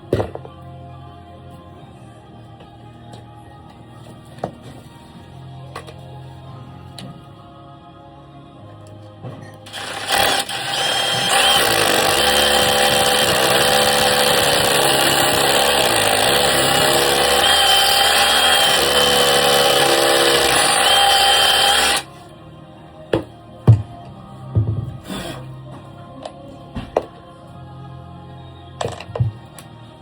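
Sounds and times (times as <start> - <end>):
power drill running: 9.7 - 22.1.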